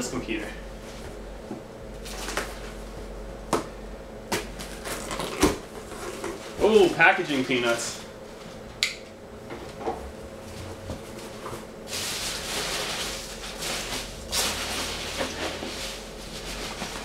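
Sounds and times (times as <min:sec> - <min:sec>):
foam packing peanuts rustling: 0:04.6 - 0:08.0, 0:11.3 - 0:17.0.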